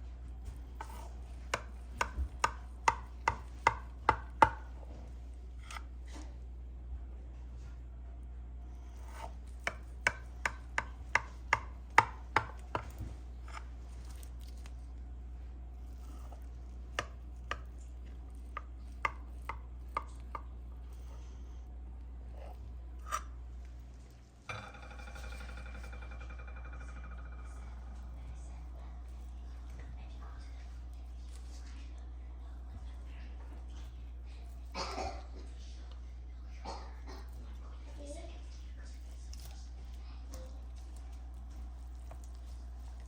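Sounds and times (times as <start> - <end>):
knife chopping on cutting board: 0.8 - 4.7, 5.6 - 5.9, 9.0 - 14.3, 16.0 - 17.8.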